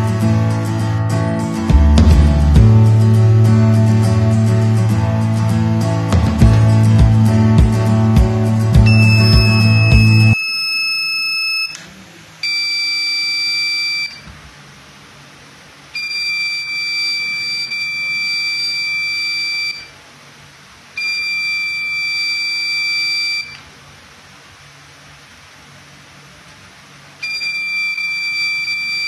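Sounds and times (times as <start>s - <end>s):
door alarm buzzer: 8.8s - 11.8s, 12.4s - 14.3s, 16.0s - 20.0s, 21.0s - 23.6s, 27.2s - 29.0s.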